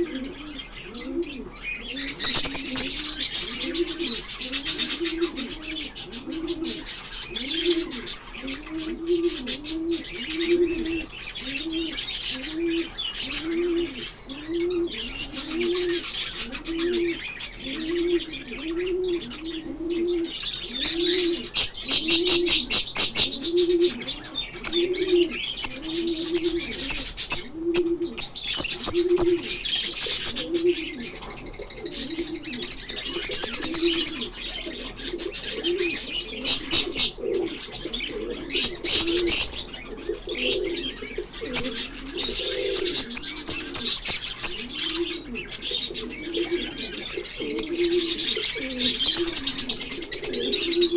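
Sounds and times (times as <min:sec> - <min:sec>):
birds chirping: 0:00.0 - 0:50.9
low arched bird notes: 0:00.0 - 0:50.9.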